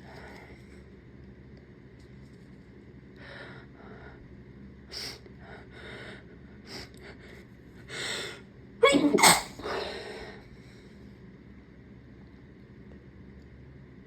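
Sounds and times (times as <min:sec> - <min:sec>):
person sneezing: 0:08.8 - 0:09.8.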